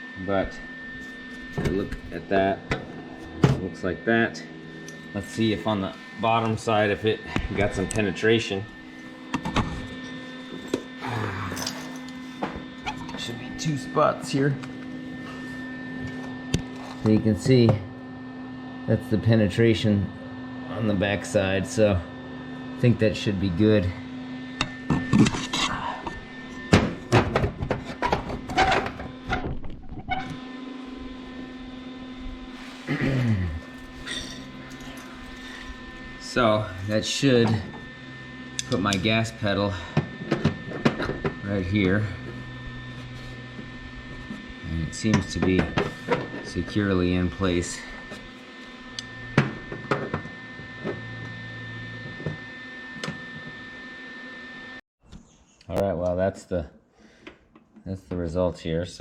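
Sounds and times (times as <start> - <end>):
low hum: 0.0 - 53.0
metal parts clinking: 33.7 - 35.7.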